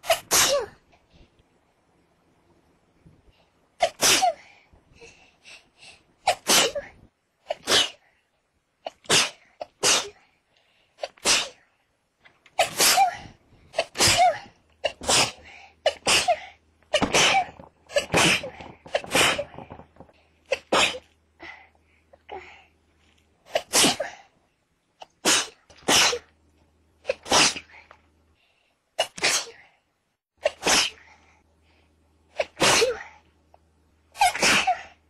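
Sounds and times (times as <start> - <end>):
person sneezing: 0.0 - 0.8, 3.8 - 4.5, 6.2 - 8.0, 8.9 - 10.2, 11.0 - 11.6, 12.6 - 21.1, 23.5 - 24.2, 25.1 - 26.3, 27.1 - 27.8, 29.0 - 29.6, 30.4 - 31.1, 32.4 - 33.2, 34.2 - 35.0
quiet breaths: 0.8 - 1.8, 2.5 - 3.8, 4.4 - 6.2, 10.2 - 11.0, 21.3 - 23.5, 27.7 - 30.0, 31.0 - 32.3.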